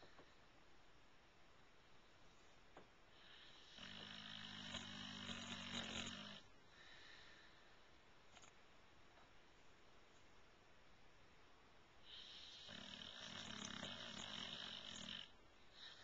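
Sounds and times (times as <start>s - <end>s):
faint breathing: 2.2s - 8.1s, 12.0s - 16.0s
dog snoring: 3.2s - 6.5s, 12.0s - 16.0s.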